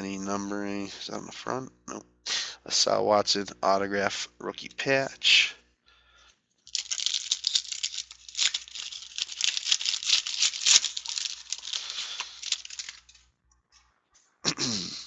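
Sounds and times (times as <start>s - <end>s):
wrapper tearing and crinkling: 6.7s - 13.2s.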